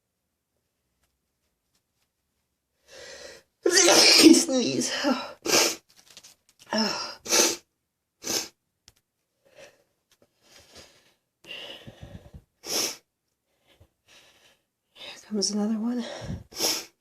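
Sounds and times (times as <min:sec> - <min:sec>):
woman breathing sharply: 0:02.8 - 0:03.5, 0:09.4 - 0:15.1, 0:16.0 - 0:17.0
woman sniffling: 0:02.9 - 0:05.8, 0:06.7 - 0:08.6, 0:16.2 - 0:17.0.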